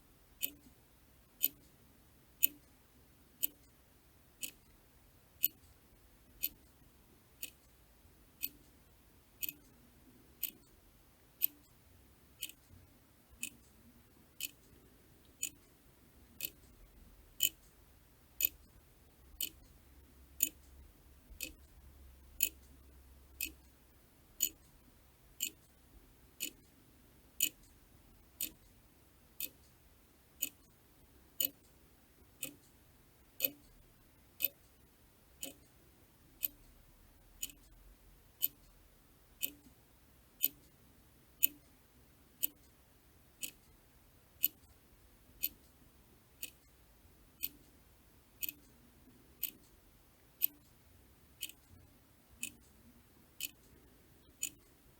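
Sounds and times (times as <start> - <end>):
clock ticking: 0.4 - 0.8, 1.4 - 1.7, 2.4 - 2.7, 3.4 - 3.7, 4.4 - 4.7, 5.4 - 5.7, 6.3 - 6.7, 7.4 - 7.7, 8.4 - 8.7, 9.4 - 9.8, 10.4 - 10.8, 11.4 - 11.8, 12.4 - 13.8, 14.4 - 15.7, 16.3 - 17.8, 18.4 - 19.8, 20.4 - 21.7, 22.3 - 23.8, 24.4 - 24.8, 25.4 - 25.7, 26.4 - 26.8, 27.4 - 29.8, 30.4 - 30.8, 31.4 - 31.8, 32.4 - 32.8, 33.4 - 33.8, 34.4 - 34.8, 35.4 - 35.7, 36.4 - 36.8, 37.4 - 37.8, 38.4 - 38.8, 39.4 - 39.8, 40.4 - 40.8, 41.4 - 41.8, 42.4 - 42.8, 43.4 - 43.8, 44.4 - 44.8, 45.4 - 45.8, 46.4 - 46.8, 47.4 - 47.8, 48.4 - 48.8, 49.4 - 49.8, 50.4 - 50.8, 51.4 - 54.9.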